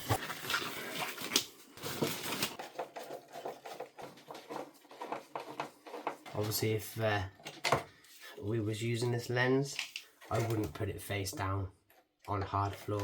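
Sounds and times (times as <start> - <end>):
plastic scraping rustle: 0.0 - 6.6.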